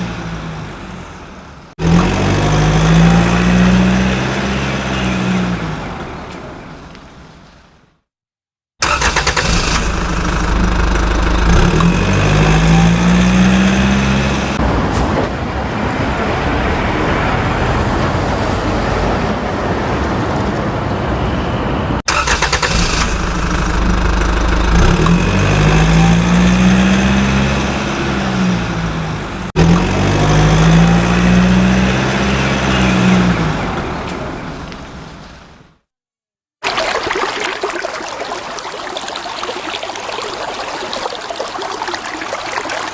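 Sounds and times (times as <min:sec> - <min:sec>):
vehicle engine revving: 0:01.8 - 0:06.2, 0:08.8 - 0:14.6, 0:22.1 - 0:34.1.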